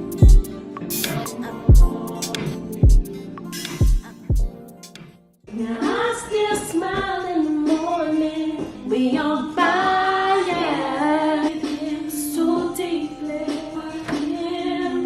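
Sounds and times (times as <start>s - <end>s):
woman singing sustained notes: 0.0s - 3.2s
song accompaniment: 0.0s - 15.0s.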